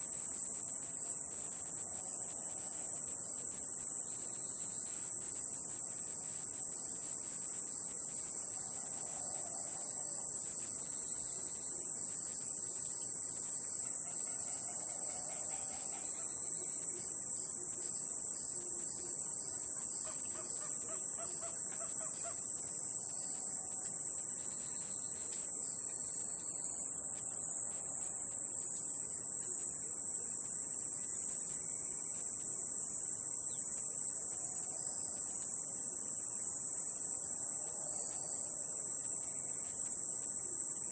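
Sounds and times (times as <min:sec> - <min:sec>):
crickets chirping: 0:00.0 - 0:40.9
faint animal calls: 0:19.7 - 0:22.4.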